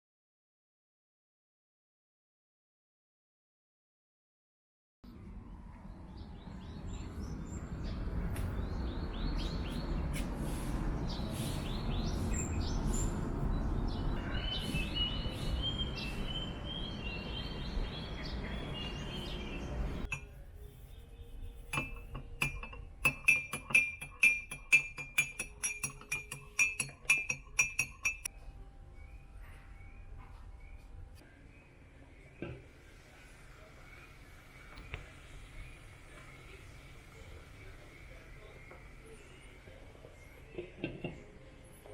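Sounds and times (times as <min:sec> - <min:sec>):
metal spoon clinking against glass: 0:21.7 - 0:28.3.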